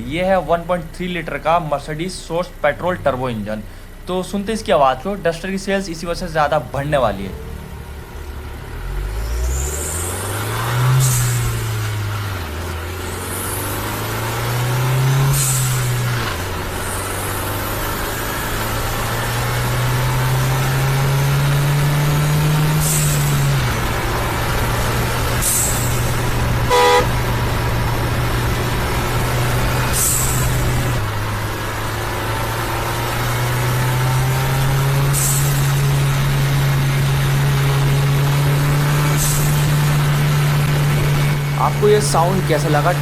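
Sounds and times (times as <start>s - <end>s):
car engine revving: 0.0s - 43.0s
car horn toot: 26.6s - 27.4s
turbo whistle: 26.7s - 27.2s.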